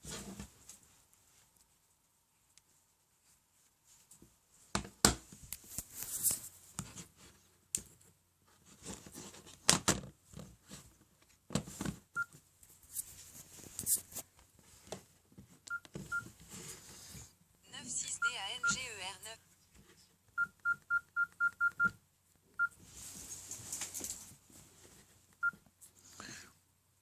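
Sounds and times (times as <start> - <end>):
high keypad beeps: 18.0 - 18.8.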